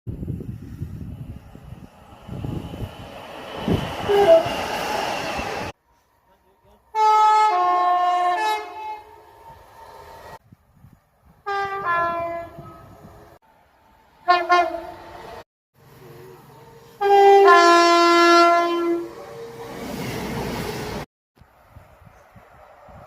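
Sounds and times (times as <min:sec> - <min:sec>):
train rumble: 0:00.1 - 0:23.0
two-tone train horn blasts: 0:04.0 - 0:04.6, 0:06.9 - 0:09.3, 0:11.4 - 0:13.1, 0:14.2 - 0:15.1, 0:16.8 - 0:19.7.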